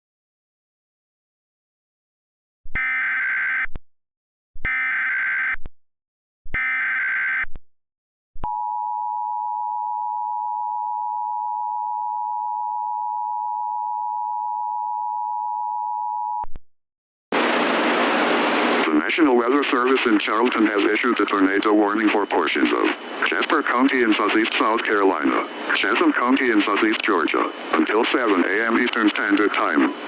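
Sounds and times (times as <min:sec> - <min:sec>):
static hiss: 0:17.4 - 0:30.0
steady dual tone: 0:17.4 - 0:30.0.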